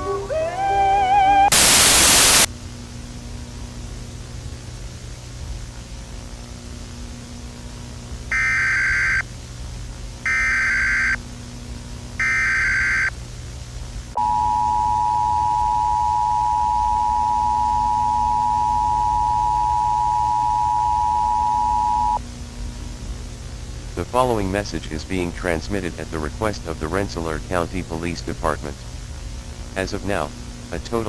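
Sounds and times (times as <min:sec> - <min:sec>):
data header warble: 0:00.0 - 0:02.5, 0:14.2 - 0:22.2
low hum and hiss: 0:00.0 - 0:31.0
two-tone attention signal: 0:14.2 - 0:22.2.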